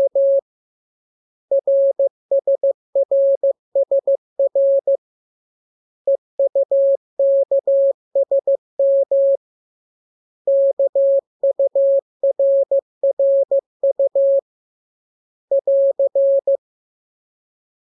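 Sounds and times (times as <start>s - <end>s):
morse code beeps: 0.0s - 0.4s, 6.1s - 9.4s, 10.5s - 14.4s, 15.5s - 16.6s.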